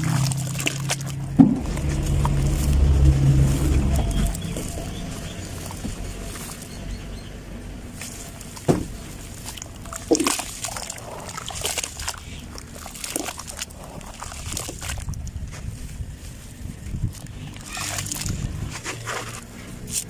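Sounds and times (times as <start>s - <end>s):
dry clumps crumbling: 0.0s - 6.8s, 7.9s - 20.0s
sharp knocks: 1.4s - 1.7s.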